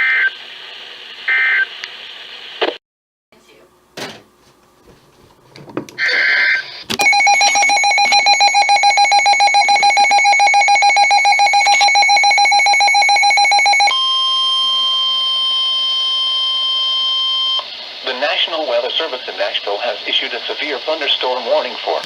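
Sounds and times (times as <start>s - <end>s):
rapid electronic alarm beeps: 6.0s - 17.6s
steady warning alarm tone: 6.0s - 17.7s.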